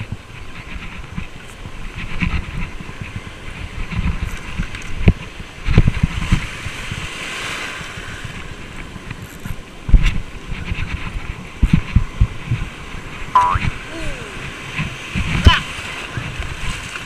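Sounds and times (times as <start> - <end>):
wind buffeting microphone: 0.0 - 17.0
hiss of surf: 5.6 - 17.0.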